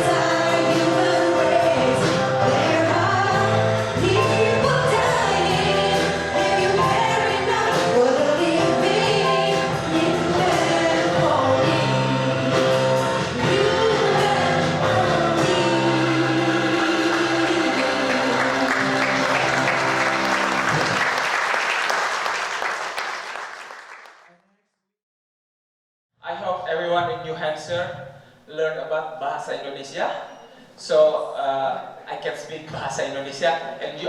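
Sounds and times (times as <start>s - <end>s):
group singing: 0.0s - 20.8s
instrumental accompaniment: 0.0s - 21.3s.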